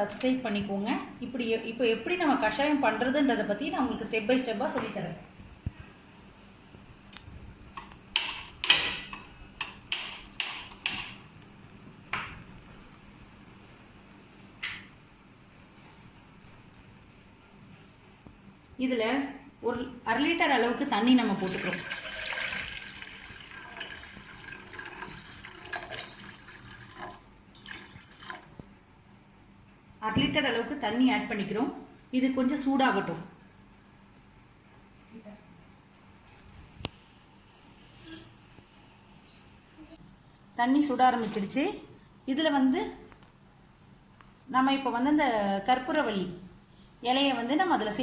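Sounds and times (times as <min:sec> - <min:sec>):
water pouring into a pot: 0:20.7 - 0:28.6
water dripping: 0:20.7 - 0:28.7.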